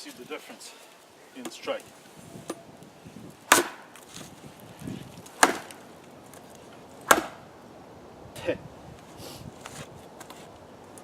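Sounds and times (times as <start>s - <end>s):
machete chopping wood: 3.5s - 4.0s, 5.2s - 5.8s, 7.0s - 7.4s.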